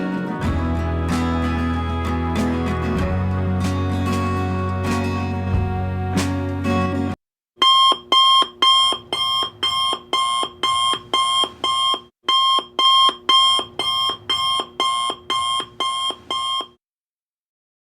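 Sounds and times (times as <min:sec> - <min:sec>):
guitar background music: 0:00.0 - 0:07.2
alarm clock beeps: 0:07.6 - 0:16.8.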